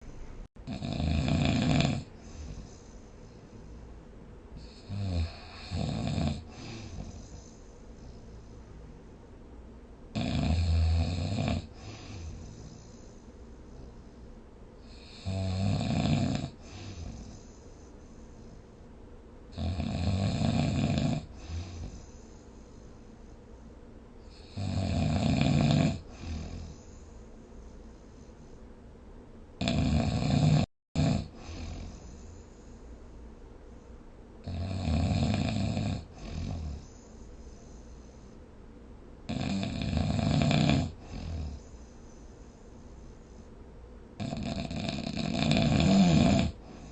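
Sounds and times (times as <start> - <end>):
loud snoring: 0.6 - 2.8, 4.6 - 7.4, 10.1 - 12.9, 14.8 - 17.4, 19.5 - 22.0, 24.3 - 26.8, 29.6 - 32.2, 34.4 - 36.9, 39.3 - 41.6, 44.2 - 46.9
soft breath: 2.1 - 5.6, 6.4 - 9.9, 11.6 - 15.2, 16.5 - 19.3, 21.3 - 24.6, 26.0 - 29.2, 31.3 - 34.2, 36.1 - 38.9, 40.9 - 44.1, 46.5 - 46.9.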